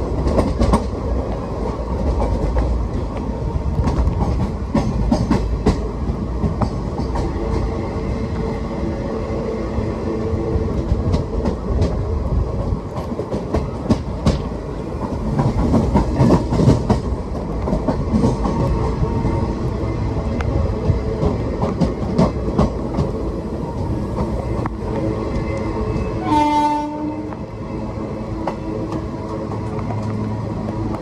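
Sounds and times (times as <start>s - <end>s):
train wagons rumbling: 0.0s - 31.0s
wheels clanking over rail joints: 10.6s - 31.0s.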